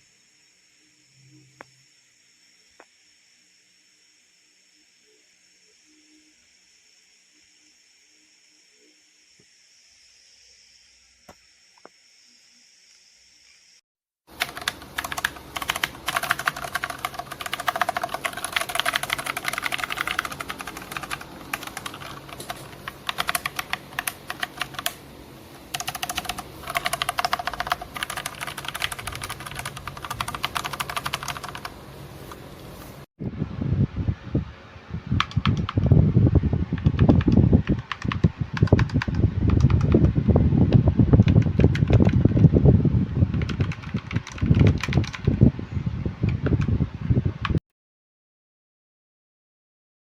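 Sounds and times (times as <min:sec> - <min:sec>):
faint hiss: 0:00.0 - 0:13.8
mechanical keyboard typing: 0:14.3 - 0:25.0, 0:25.6 - 0:31.8, 0:35.2 - 0:35.9, 0:36.8 - 0:40.1, 0:41.2 - 0:42.4, 0:43.3 - 0:45.4.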